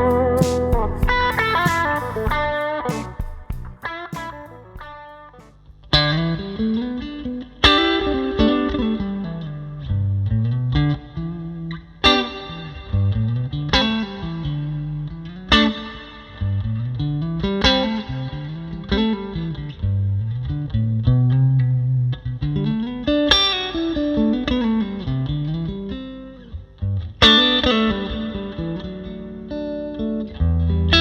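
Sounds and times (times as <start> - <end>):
electric guitar chords ringing: 0.0 - 9.9
picked guitar bass line: 0.0 - 31.0.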